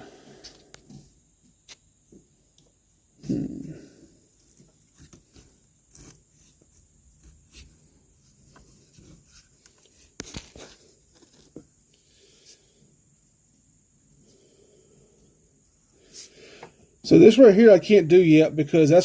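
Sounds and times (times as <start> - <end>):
rustling of wiring: 4.2 - 12.0.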